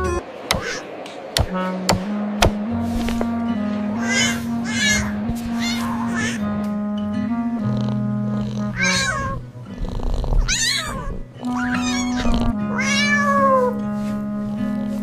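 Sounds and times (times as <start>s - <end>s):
background music: 0.0s - 0.6s, 1.2s - 15.0s
cat meowing: 4.0s - 6.4s, 8.6s - 9.4s, 10.4s - 13.8s.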